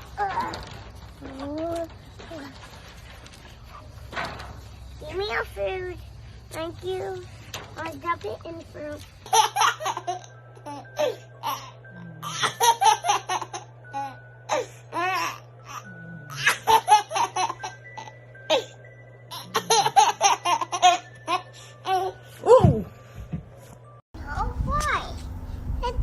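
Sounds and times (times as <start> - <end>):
light background music: 0.0 - 26.0
baby laughing: 9.2 - 18.7, 19.3 - 22.2.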